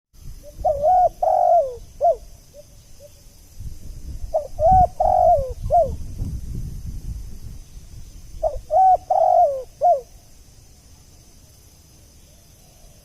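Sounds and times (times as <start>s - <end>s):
dove cooing: 0.4s - 3.1s, 4.3s - 6.0s, 8.4s - 10.2s.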